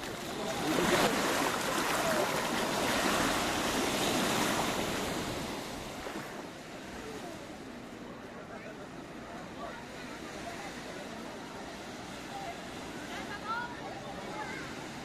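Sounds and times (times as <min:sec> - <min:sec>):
wave washing onto sandy beach: 0:00.0 - 0:15.0.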